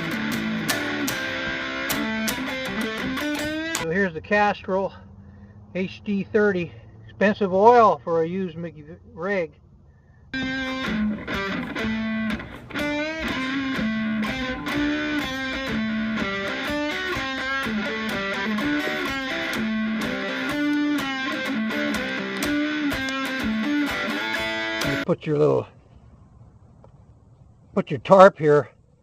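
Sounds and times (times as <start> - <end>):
electric guitar instrumental music: 0.0 - 3.9, 10.4 - 25.1.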